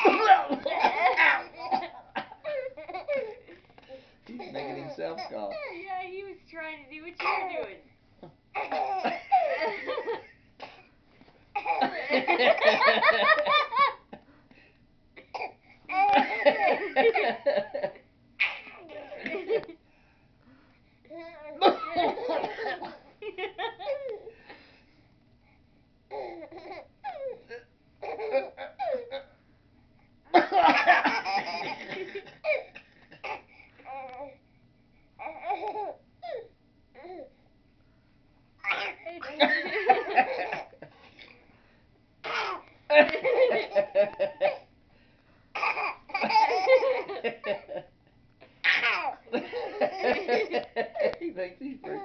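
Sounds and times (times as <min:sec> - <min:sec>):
baby coughing: 0:00.0 - 0:03.4, 0:04.4 - 0:05.8, 0:07.2 - 0:07.6, 0:08.5 - 0:09.6, 0:11.5 - 0:12.0, 0:15.2 - 0:16.8, 0:18.4 - 0:19.3, 0:21.4 - 0:23.0, 0:30.4 - 0:33.5, 0:38.6 - 0:39.5, 0:42.2 - 0:42.6, 0:45.5 - 0:47.7, 0:48.6 - 0:50.5
baby laughing: 0:00.0 - 0:03.6, 0:04.3 - 0:05.8, 0:08.6 - 0:09.8, 0:11.6 - 0:14.0, 0:15.4 - 0:17.4, 0:18.4 - 0:19.7, 0:23.7 - 0:24.3, 0:28.0 - 0:29.2, 0:30.6 - 0:34.2, 0:38.6 - 0:40.8, 0:42.2 - 0:44.7, 0:45.6 - 0:47.8, 0:48.6 - 0:51.2
baby babbling and laughing: 0:07.2 - 0:07.6, 0:35.2 - 0:37.3, 0:48.6 - 0:49.2.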